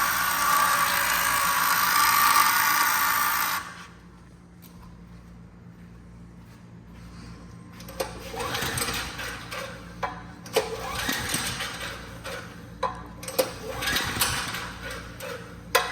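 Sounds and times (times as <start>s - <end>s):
generator engine cranking: 0.0s - 3.9s, 7.8s - 15.9s.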